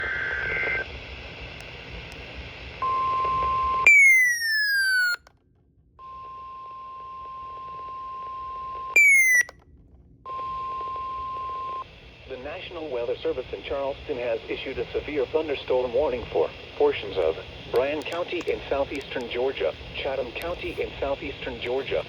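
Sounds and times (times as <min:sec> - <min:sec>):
steady electronic beep tone: 0:09.0 - 0:09.5.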